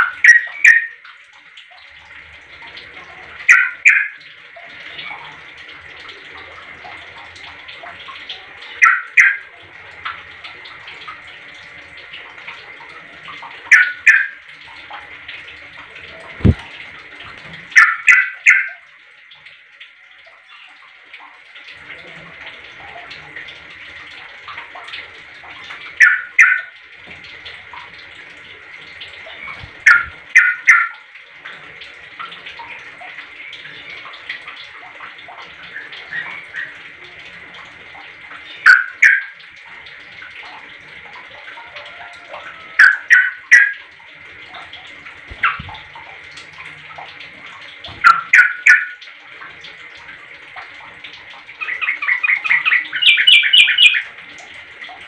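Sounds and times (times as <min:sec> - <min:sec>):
bird calling: 0:00.0 - 0:01.0, 0:26.0 - 0:26.7, 0:48.0 - 0:49.0, 0:51.6 - 0:54.1.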